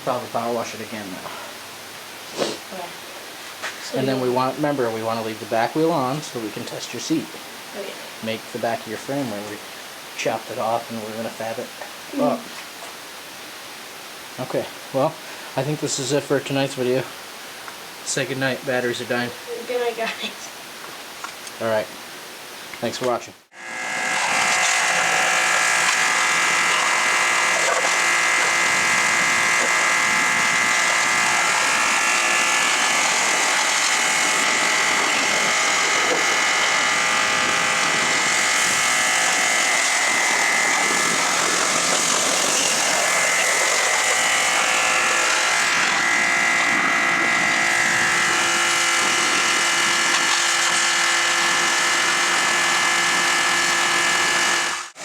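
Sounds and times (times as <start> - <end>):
hiss: 2.2 - 2.8
small motor buzzing whine: 23.5 - 55.0.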